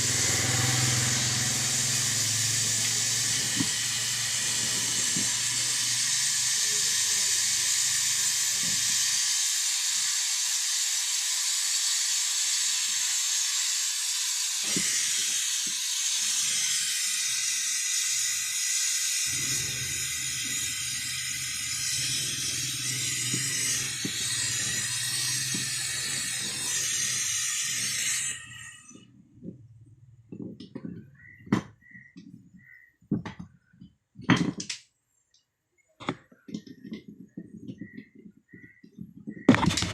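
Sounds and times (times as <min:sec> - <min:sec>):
water rushing from a tap: 0:00.1 - 0:28.3.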